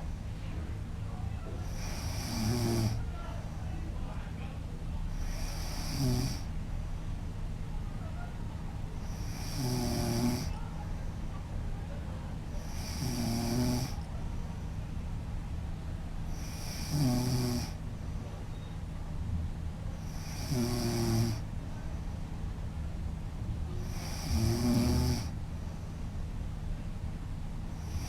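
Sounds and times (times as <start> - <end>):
woman snoring: 1.7 - 3.0, 5.2 - 6.5, 9.1 - 10.6, 12.6 - 14.1, 16.3 - 17.8, 20.1 - 21.4, 23.8 - 25.3.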